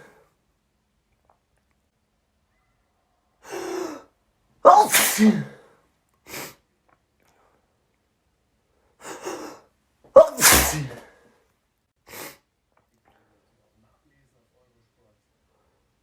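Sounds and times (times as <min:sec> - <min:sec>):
person sneezing: 0:00.0 - 0:00.2, 0:03.4 - 0:05.7, 0:09.0 - 0:11.2.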